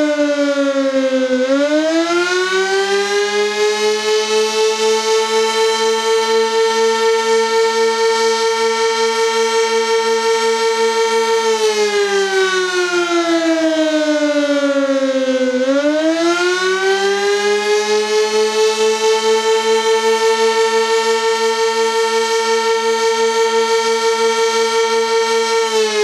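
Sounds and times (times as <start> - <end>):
warning siren wailing: 0.0 - 26.0.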